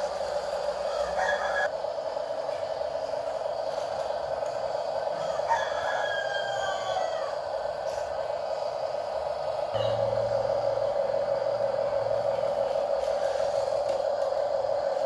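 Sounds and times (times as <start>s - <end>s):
rooster crowing: 0.8s - 1.7s, 5.0s - 7.8s
steady hum: 7.2s - 15.0s.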